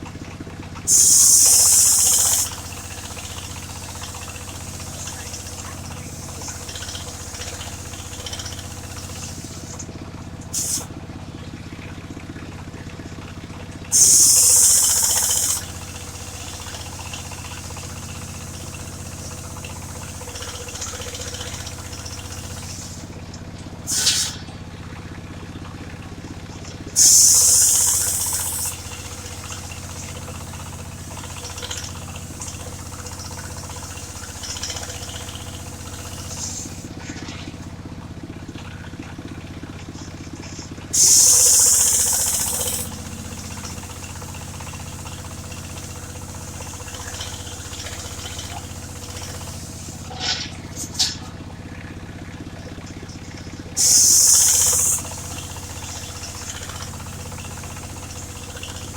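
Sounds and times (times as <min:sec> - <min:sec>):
sawmill engine sawing log: 0:00.0 - 0:11.0, 0:13.2 - 0:24.6, 0:26.2 - 0:58.9
loud hissing bursts: 0:00.9 - 0:09.8, 0:10.5 - 0:10.9, 0:13.9 - 0:23.1, 0:23.9 - 0:24.4, 0:26.9 - 0:37.0, 0:40.9 - 0:50.2, 0:53.8 - 0:58.9.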